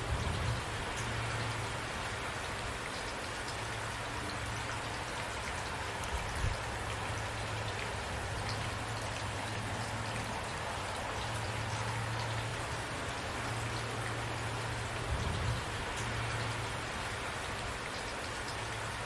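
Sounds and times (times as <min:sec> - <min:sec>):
steady rain falling: 0:00.0 - 0:19.0.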